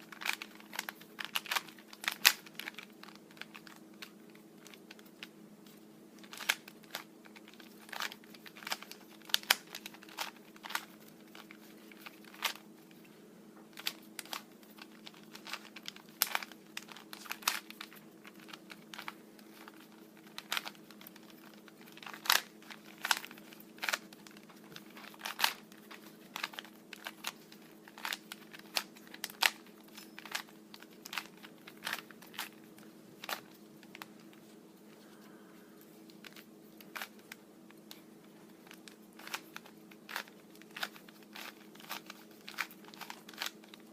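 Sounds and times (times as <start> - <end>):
puzzle cube plastic clicks: 0.0 - 5.3, 6.2 - 12.7, 13.7 - 34.4, 36.1 - 43.9
faint steady hum: 0.0 - 43.9.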